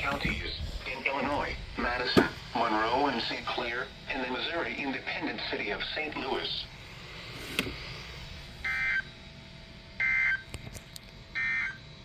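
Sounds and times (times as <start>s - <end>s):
digital data tone bursts: 8.6s - 9.1s, 10.0s - 10.5s.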